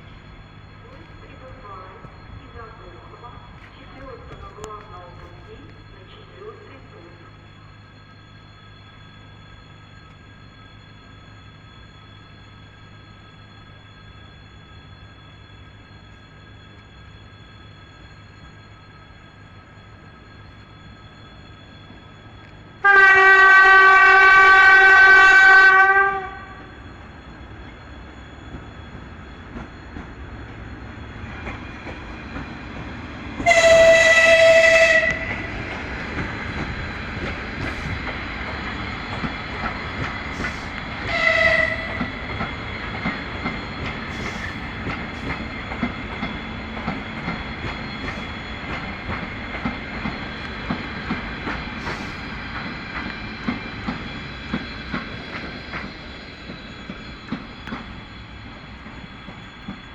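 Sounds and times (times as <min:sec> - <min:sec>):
loud low train horn: 0:22.8 - 0:26.8, 0:33.4 - 0:35.6, 0:41.0 - 0:42.2
high-pitched train whistle: 0:22.8 - 0:26.9, 0:33.4 - 0:35.7, 0:40.3 - 0:42.3
train wheels clicking over rail joints: 0:27.6 - 0:59.9.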